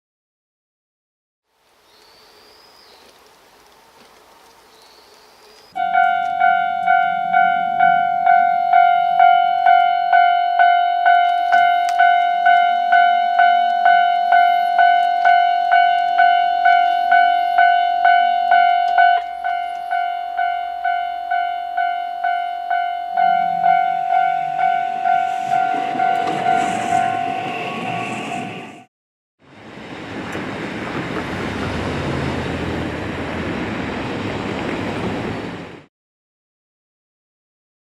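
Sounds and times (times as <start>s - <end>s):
approaching train: 1.6s - 35.9s
level crossing warning bell: 5.8s - 28.8s.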